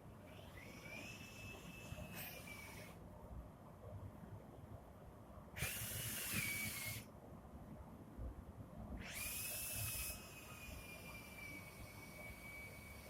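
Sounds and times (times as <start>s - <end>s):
rotary milling tool whining: 0.2s - 3.0s, 5.6s - 7.1s, 9.0s - 13.0s.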